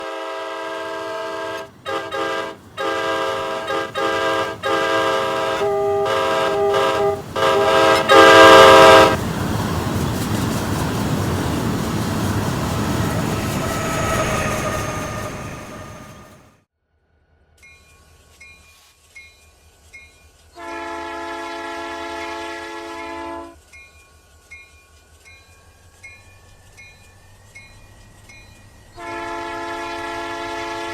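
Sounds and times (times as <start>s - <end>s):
locomotive air horn blasts: 0.0s - 9.2s, 12.8s - 16.4s, 20.6s - 23.6s, 29.0s - 30.9s
train rumbling past: 0.0s - 16.6s, 20.6s - 30.9s
faint wheel squeal: 1.5s - 16.5s.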